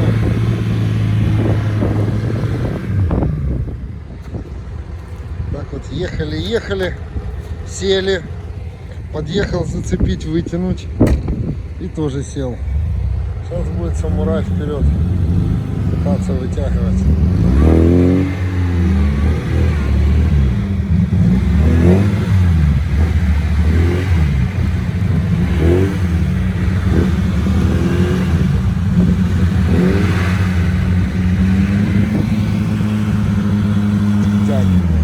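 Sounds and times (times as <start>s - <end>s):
off-road engines revving: 0.0s - 35.0s.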